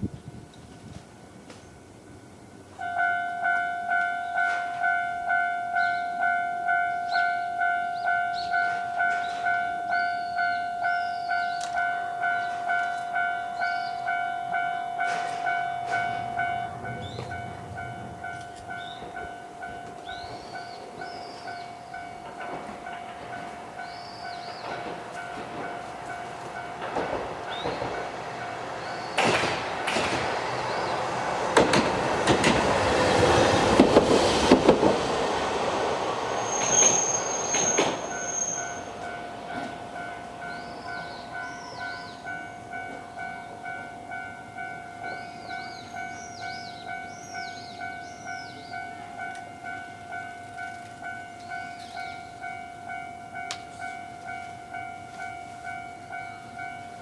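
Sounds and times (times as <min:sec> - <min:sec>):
level crossing warning bell ringing: 0:01.2 - 0:33.4, 0:35.1 - 0:57.0
tram wheels clacking over rail joints: 0:08.0 - 0:10.3, 0:15.0 - 0:43.8
high wheel squeal: 0:36.3 - 0:39.0.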